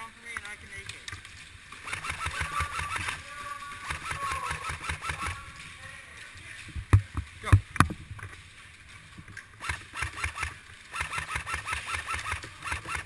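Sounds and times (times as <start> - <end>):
airsoft gun full-auto fire: 1.8 - 3.2, 3.8 - 5.4, 9.6 - 13.0.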